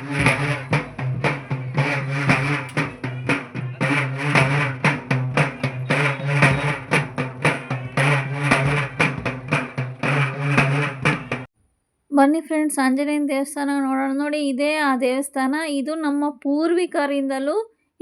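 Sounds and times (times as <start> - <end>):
sustained low tone: 0.0 - 11.4
drums in fast rhythm: 0.0 - 11.5.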